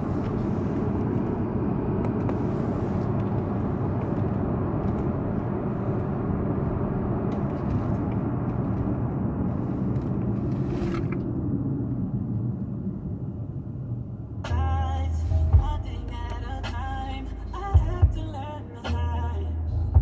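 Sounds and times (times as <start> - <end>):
car cabin rumble: 0.0 - 20.0
music: 14.5 - 20.0.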